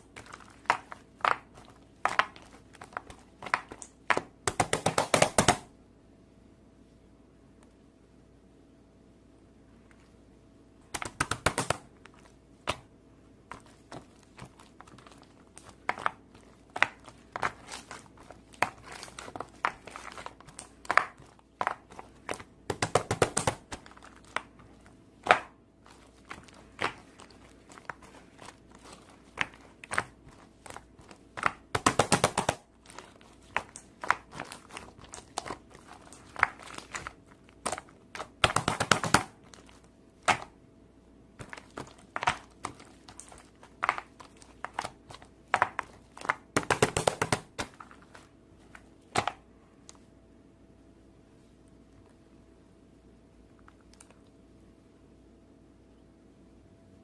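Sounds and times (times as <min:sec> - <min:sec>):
slime squishing and crackling: 0:00.0 - 0:05.6, 0:10.8 - 0:40.6, 0:41.4 - 0:49.4.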